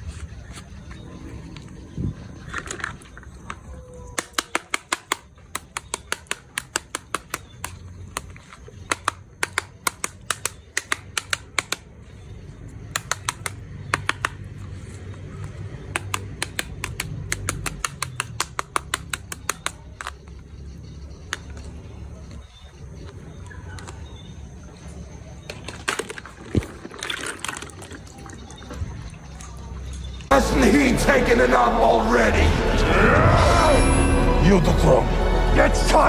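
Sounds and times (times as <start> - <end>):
rapid sharp clicks: 15.9 - 20.4.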